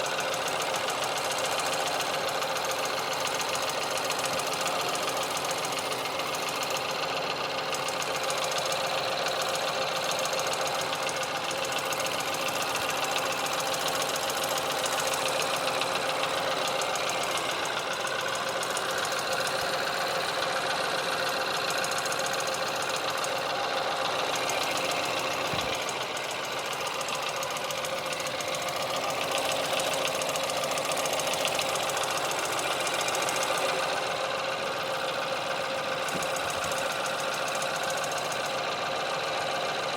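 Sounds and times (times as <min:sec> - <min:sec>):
car engine idling: 0:00.0 - 0:39.9
rapid ticking knocking noise: 0:00.0 - 0:39.9.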